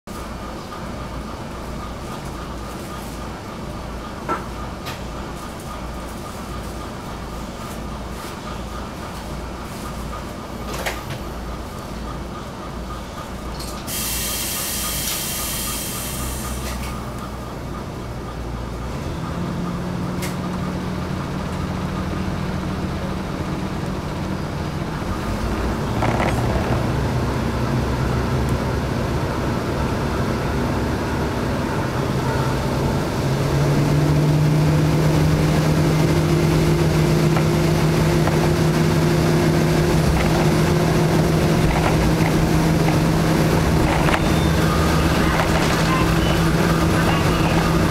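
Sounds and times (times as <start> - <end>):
diesel railcar engine drone: 0.1 - 47.9
air brake hiss: 13.8 - 17.0.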